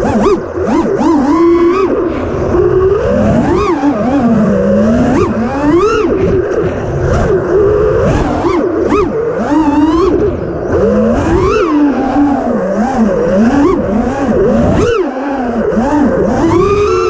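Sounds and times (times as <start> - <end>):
drone motors whining: 0.0 - 17.0
rush of air: 1.8 - 13.3.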